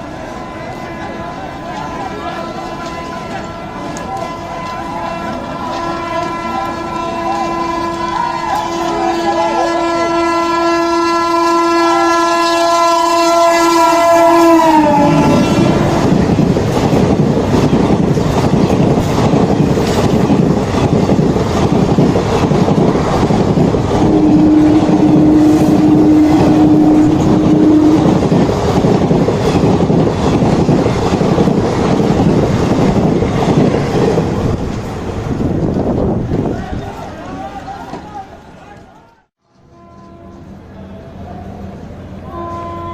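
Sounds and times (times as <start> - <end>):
train coaches rumbling past: 0.0 - 42.9
locomotive horn blast: 2.1 - 16.4, 24.0 - 28.4, 39.6 - 41.2, 42.2 - 42.9
train wheel clatter: 15.8 - 37.1.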